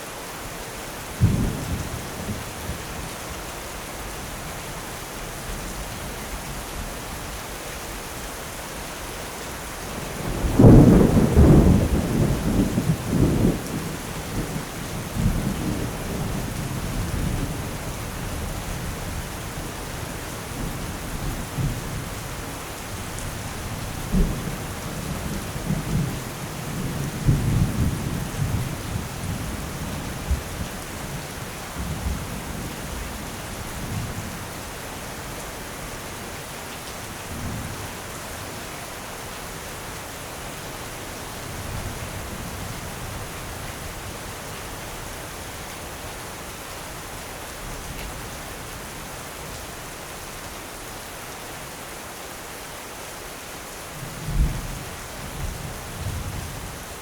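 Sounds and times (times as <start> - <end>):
heavy rain falling: 0.0 - 57.0
thunder rumbling: 10.0 - 19.2.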